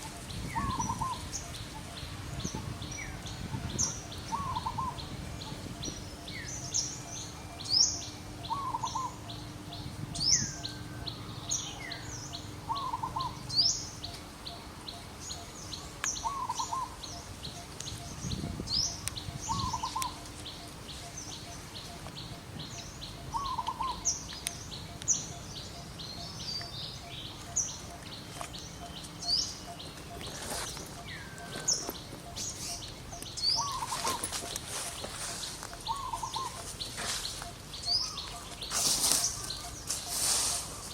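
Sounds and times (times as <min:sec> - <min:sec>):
lower warbling bird call: 0:00.0 - 0:40.9
high rising bird chirps: 0:16.2 - 0:40.9.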